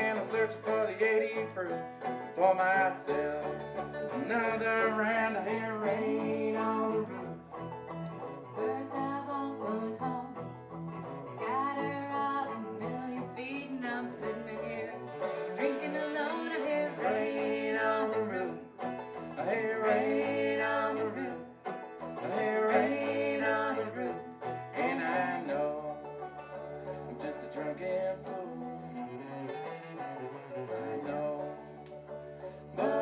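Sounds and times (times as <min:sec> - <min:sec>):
acoustic string band playing: 0:00.0 - 0:33.0
banjo: 0:00.0 - 0:33.0
guitar: 0:00.0 - 0:33.0.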